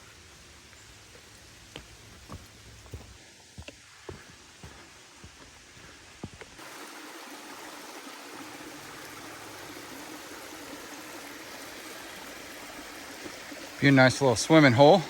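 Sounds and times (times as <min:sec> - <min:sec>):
stream water rushing: 0:06.6 - 0:15.0.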